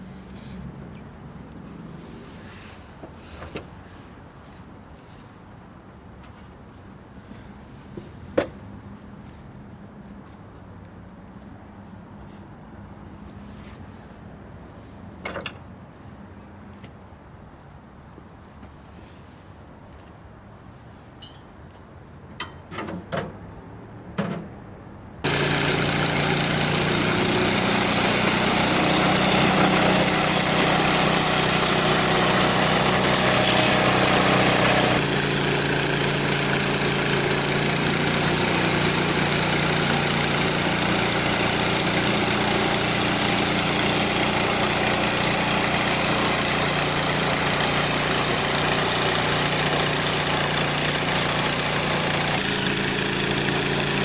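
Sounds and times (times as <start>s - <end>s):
sawmill engine running: 25.2s - 54.0s.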